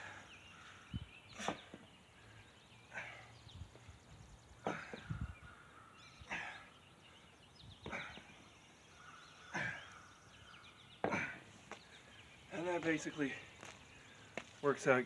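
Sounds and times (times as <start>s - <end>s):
man exhaling and grunting: 4.6s - 5.2s, 6.2s - 6.7s, 7.8s - 8.3s, 11.0s - 11.5s.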